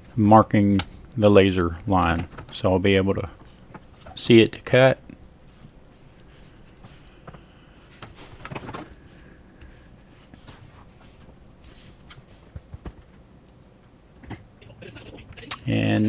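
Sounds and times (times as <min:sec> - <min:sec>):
light taps and handling knocks: 0:00.0 - 0:14.6
marker scratching on drywall: 0:05.4 - 0:13.0.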